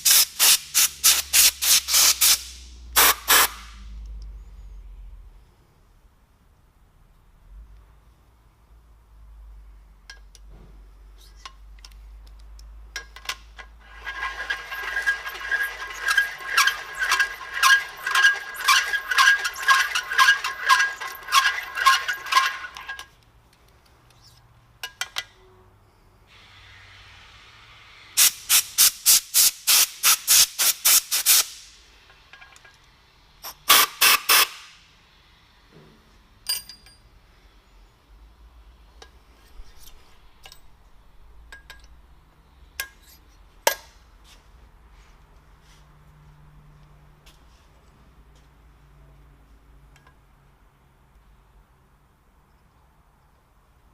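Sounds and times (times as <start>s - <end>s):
compressed air blasts: 0.0s - 3.8s, 26.3s - 31.8s, 33.4s - 34.8s.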